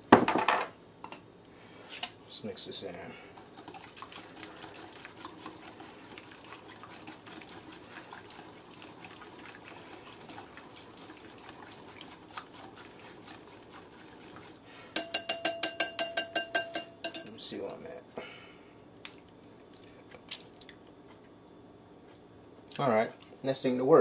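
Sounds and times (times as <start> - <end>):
liquid swishing in a bowl: 3.3 - 17.8
whisk clinking on a bowl: 15.0 - 17.9.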